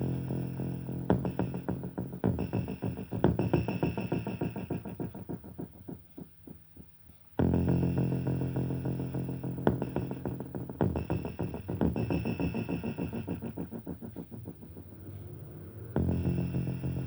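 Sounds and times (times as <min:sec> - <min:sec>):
electronic synthesizer music: 0:09.1 - 0:17.0.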